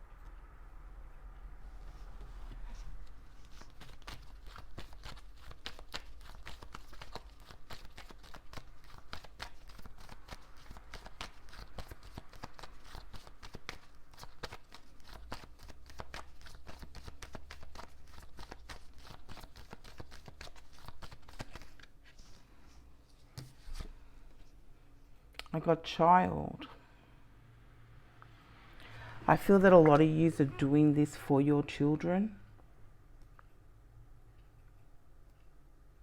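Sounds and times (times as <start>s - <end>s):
cards being shuffled by hand: 2.5s - 24.6s.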